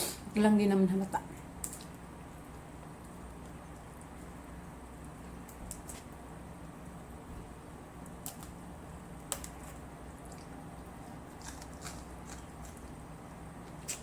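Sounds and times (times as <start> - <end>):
low steady hum: 0.0 - 14.0
eating clicks and smacks: 11.2 - 13.0.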